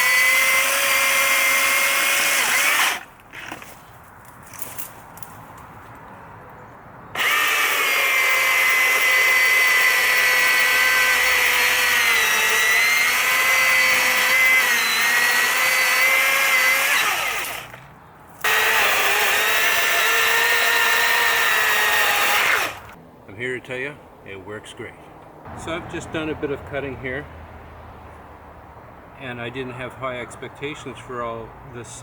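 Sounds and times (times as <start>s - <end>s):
electric chainsaw whining: 0.0s - 3.6s, 7.2s - 17.8s, 18.4s - 23.0s.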